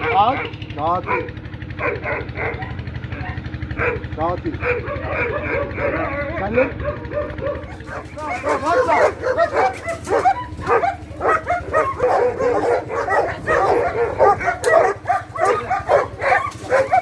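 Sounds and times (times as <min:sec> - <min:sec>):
dog yelping and whining: 0:04.6 - 0:17.0.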